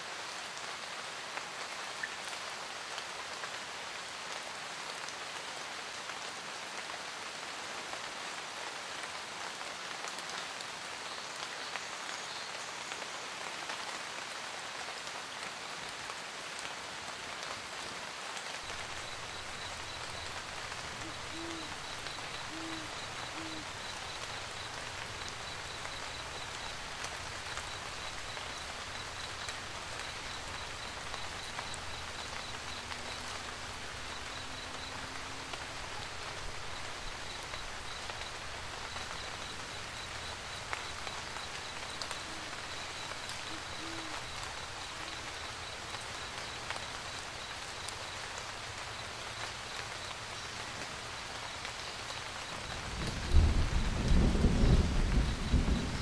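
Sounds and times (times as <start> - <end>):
steady rain: 0.0 - 56.0
owl hooting: 18.7 - 26.8, 41.0 - 45.6.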